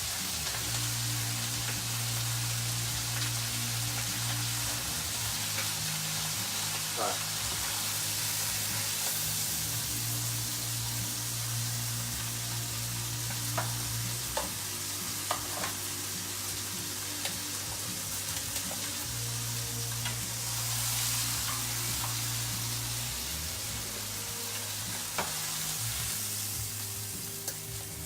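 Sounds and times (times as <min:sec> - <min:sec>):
chicken sizzling in a pan: 0:00.0 - 0:28.0.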